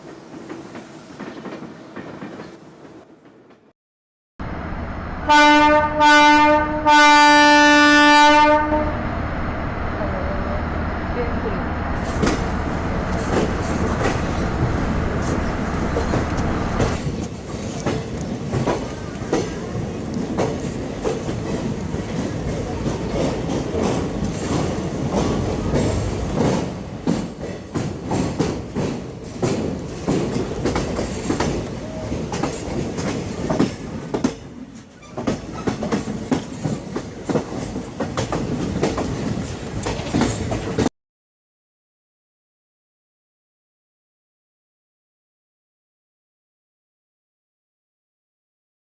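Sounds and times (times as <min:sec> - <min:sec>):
train wheels clicking over rail joints: 0:00.0 - 0:03.6, 0:12.0 - 0:40.9
train rumble: 0:00.0 - 0:03.7, 0:04.4 - 0:40.9.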